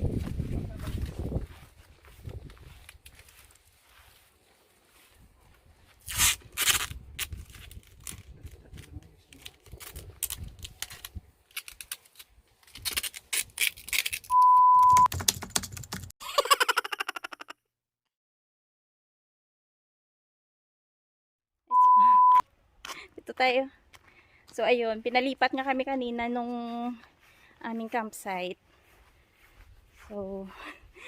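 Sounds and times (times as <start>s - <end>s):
short steady beep: 14.3s - 15.1s, 21.7s - 22.4s.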